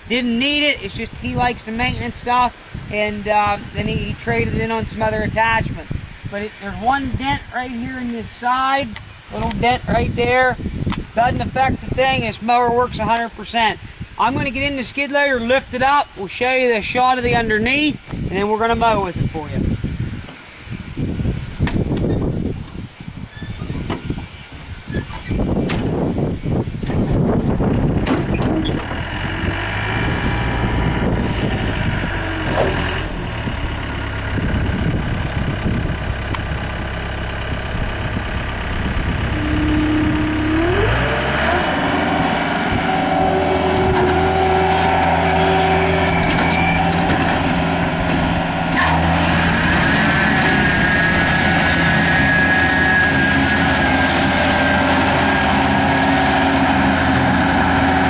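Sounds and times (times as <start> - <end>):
loader engine idling and revving: 27.0 - 58.0
mower attachment whine: 27.6 - 58.0.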